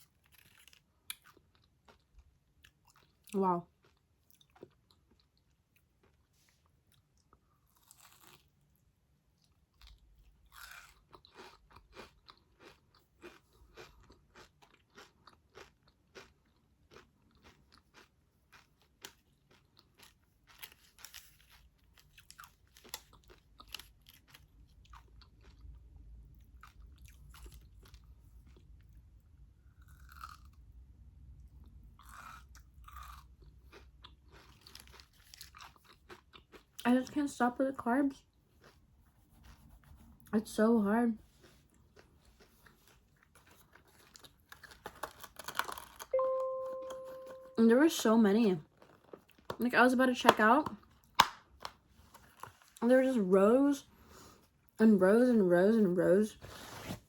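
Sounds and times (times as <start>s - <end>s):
close-up chewing crunches: 0.0s - 29.0s, 29.8s - 30.6s, 32.0s - 36.9s, 38.3s - 40.3s, 41.2s - 46.1s, 48.7s - 49.6s.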